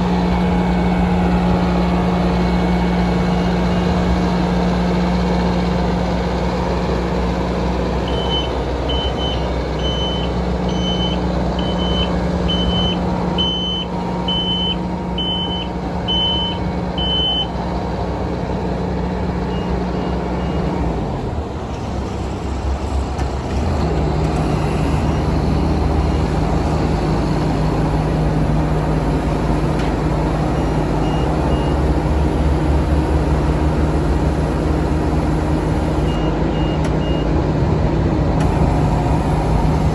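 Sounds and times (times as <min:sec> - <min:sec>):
diesel engine running: 0:00.0 - 0:39.9
reversing alarm beeping: 0:00.1 - 0:04.3, 0:08.0 - 0:17.6, 0:28.3 - 0:37.3, 0:38.4 - 0:39.9.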